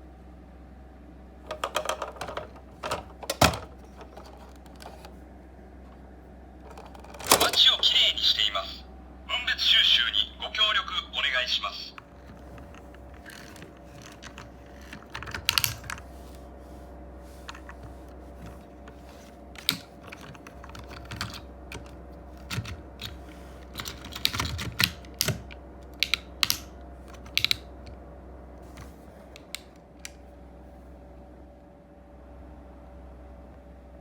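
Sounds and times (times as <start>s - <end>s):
faint steady hum: 0.0s - 34.0s
plastic toys clicking and knocking: 1.5s - 5.1s, 6.7s - 7.8s, 13.2s - 16.0s, 19.6s - 27.6s.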